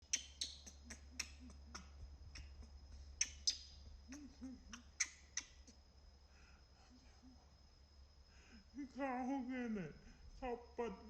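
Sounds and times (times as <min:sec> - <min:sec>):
soft low hoots: 0:00.0 - 0:07.6.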